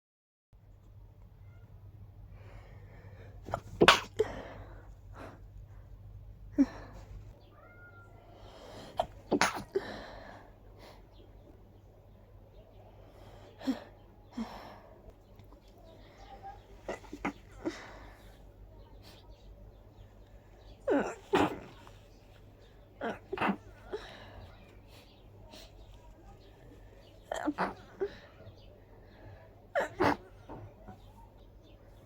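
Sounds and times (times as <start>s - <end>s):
person breathing: 2.3s - 3.4s
person sneezing: 3.4s - 4.5s, 8.9s - 10.0s, 29.8s - 30.6s.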